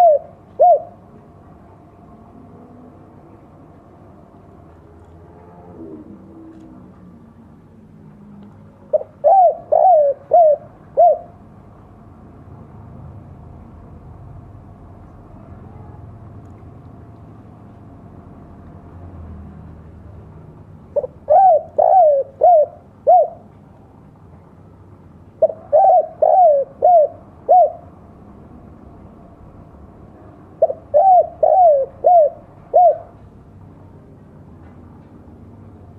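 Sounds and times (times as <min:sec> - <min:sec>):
dove cooing: 0:00.0 - 0:01.1, 0:05.4 - 0:06.9, 0:08.9 - 0:11.4, 0:20.9 - 0:23.5, 0:25.4 - 0:27.9, 0:30.6 - 0:33.2.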